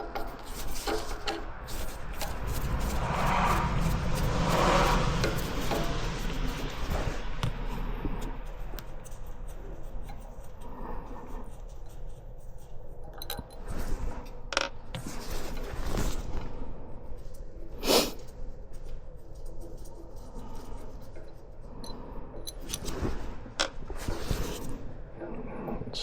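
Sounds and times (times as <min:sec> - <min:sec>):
metal parts clicking and scraping: 0:13.0 - 0:13.7, 0:21.8 - 0:24.7.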